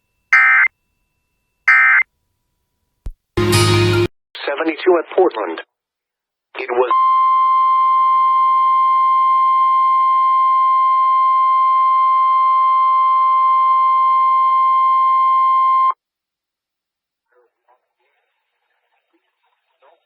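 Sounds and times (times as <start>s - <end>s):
steady loud alert tone: 0.4s - 0.7s.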